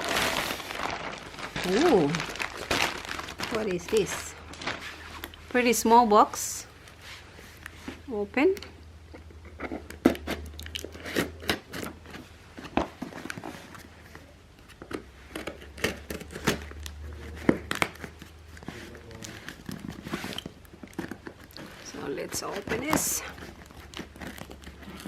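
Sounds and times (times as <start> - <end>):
packaging crinkling and tearing: 0.0 - 5.5, 15.4 - 25.0.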